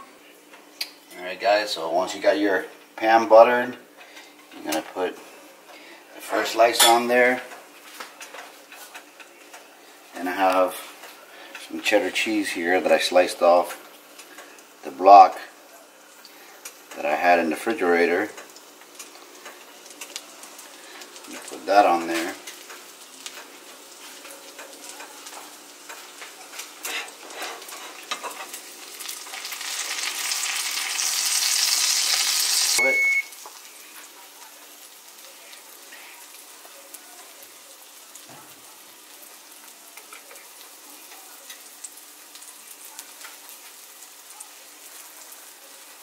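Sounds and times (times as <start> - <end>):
food sizzling in a pan: 1.8 - 46.0
high beep: 32.8 - 33.4.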